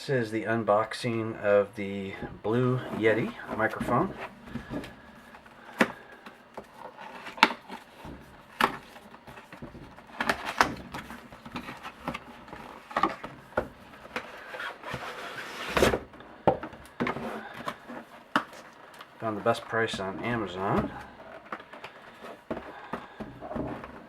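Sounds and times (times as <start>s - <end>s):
cardboard box scraping and rustling: 6.7s - 16.1s.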